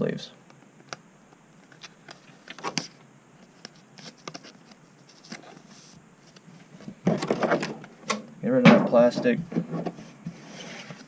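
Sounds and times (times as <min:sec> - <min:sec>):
cards tapping and scraping: 0:01.6 - 0:06.5
cards sliding into plastic sleeves: 0:03.6 - 0:06.4.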